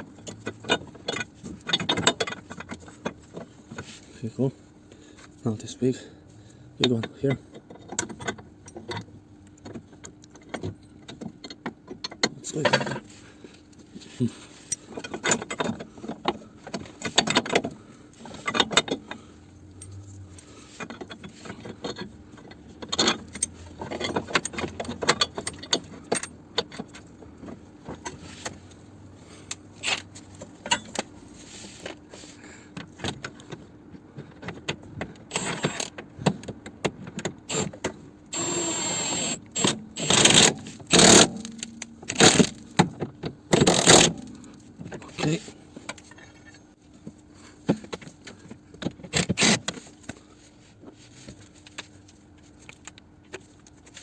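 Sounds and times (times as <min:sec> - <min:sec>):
mechanical whir: 0:35.3 - 0:35.9, 0:37.5 - 0:42.6
metal tools and bolts clinking: 0:38.4 - 0:42.8.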